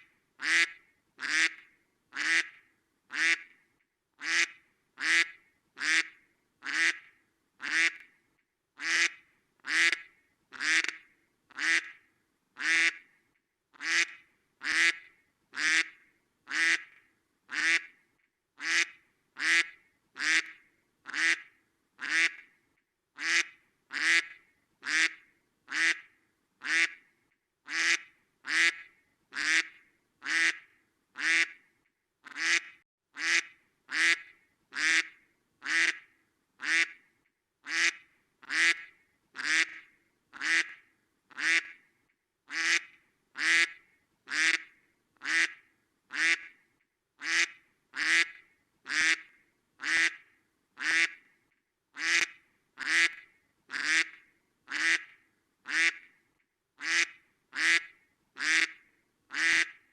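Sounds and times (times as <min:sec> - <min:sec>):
duck quacking: 0:00.4 - 0:01.6, 0:02.2 - 0:03.5, 0:04.2 - 0:08.0, 0:08.8 - 0:12.0, 0:12.6 - 0:13.0, 0:13.8 - 0:16.9, 0:17.5 - 0:17.9, 0:18.6 - 0:22.4, 0:23.2 - 0:27.0, 0:27.7 - 0:30.6, 0:31.2 - 0:31.6, 0:32.2 - 0:36.0, 0:36.6 - 0:37.0, 0:37.6 - 0:39.8, 0:40.4 - 0:41.8, 0:42.5 - 0:46.5, 0:47.2 - 0:50.2, 0:50.8 - 0:51.2, 0:52.0 - 0:55.1, 0:55.7 - 0:56.1, 0:56.8 - 0:59.8.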